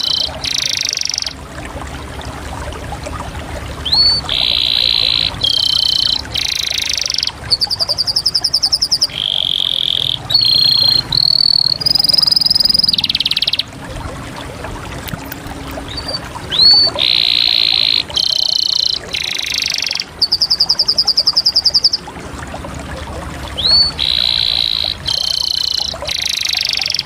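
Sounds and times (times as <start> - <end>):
canary singing trilled phrases: 0.0 - 1.4, 3.8 - 13.7, 15.8 - 22.0, 23.6 - 27.0.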